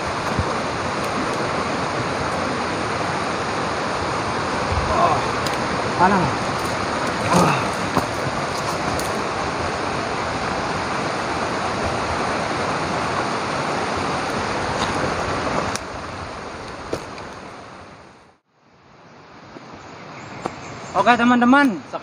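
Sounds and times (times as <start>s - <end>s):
water rushing: 0.0s - 18.4s.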